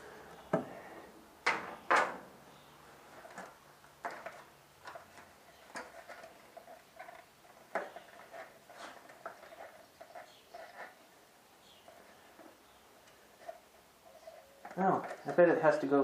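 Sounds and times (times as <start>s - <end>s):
clicks and rattles of handled parts: 3.2s - 11.0s, 11.8s - 15.5s
faint squeaks: 4.2s - 16.0s.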